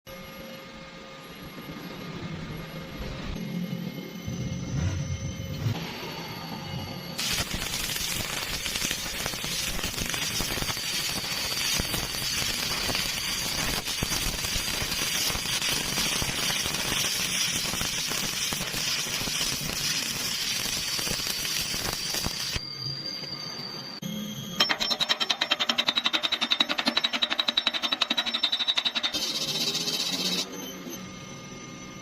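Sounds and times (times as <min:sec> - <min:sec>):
thin high whine: 0:00.1 - 0:32.0
welding arc crackling and sizzling: 0:07.2 - 0:22.6, 0:25.0 - 0:30.5.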